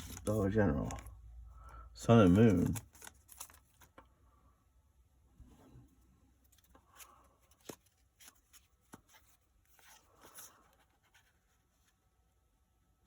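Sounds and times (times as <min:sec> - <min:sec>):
trading cards rustling and tapping: 0:00.0 - 0:01.2, 0:02.1 - 0:04.1, 0:06.4 - 0:11.4.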